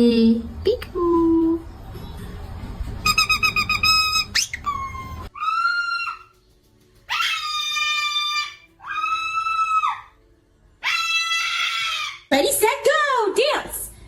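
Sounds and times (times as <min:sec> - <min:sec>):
parrot calling: 0:03.0 - 0:06.4, 0:07.1 - 0:10.1.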